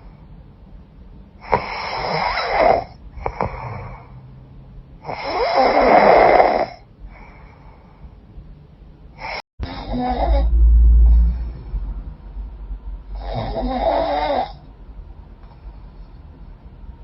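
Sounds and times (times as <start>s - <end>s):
woman snoring: 1.4s - 4.3s, 5.0s - 6.8s, 9.2s - 11.2s, 13.2s - 14.6s
faint breath: 7.0s - 8.3s, 15.4s - 17.0s.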